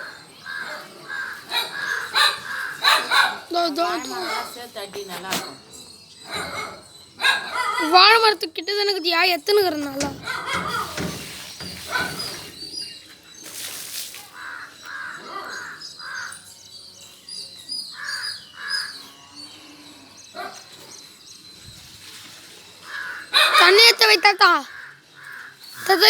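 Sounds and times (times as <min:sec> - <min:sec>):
small birds chirping: 0:00.0 - 0:26.0
crow cawing: 0:14.4 - 0:16.3, 0:24.6 - 0:25.6.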